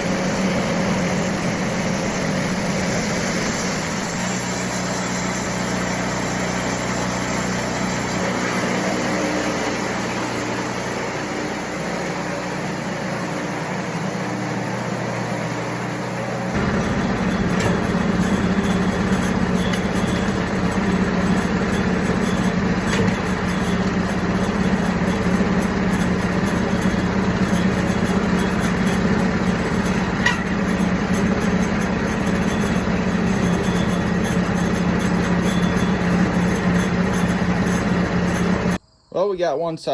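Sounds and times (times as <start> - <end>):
bandsaw mill sawing log: 0.0 - 38.8.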